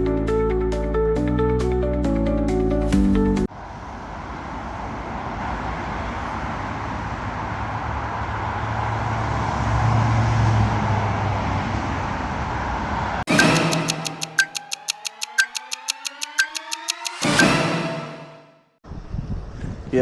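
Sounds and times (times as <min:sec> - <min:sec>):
music: 0:00.0 - 0:03.5, 0:13.3 - 0:18.7
car passing: 0:03.5 - 0:13.3
roadway rumble: 0:03.5 - 0:13.3.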